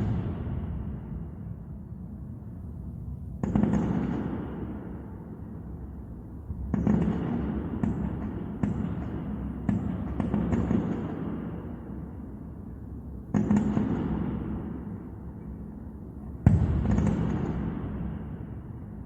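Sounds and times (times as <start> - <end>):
fireworks bangs with rolling rumble: 16.4 - 18.2.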